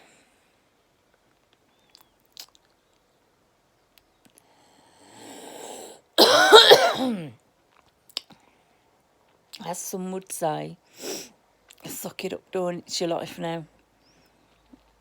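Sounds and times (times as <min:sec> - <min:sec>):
woman breathing in noisily: 0:04.5 - 0:06.0
woman coughing harshly: 0:06.2 - 0:07.3.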